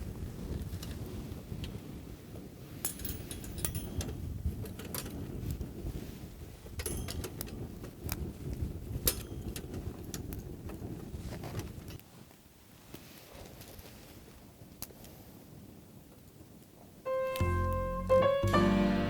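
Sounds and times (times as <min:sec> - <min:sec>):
low steady rumble: 0:17.1 - 0:19.0.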